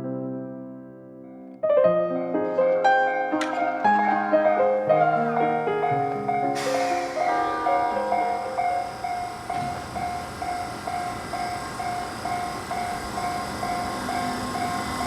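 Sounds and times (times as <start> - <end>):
train running on rails: 3.4 - 15.0
level-crossing warning bell ringing: 4.0 - 15.0.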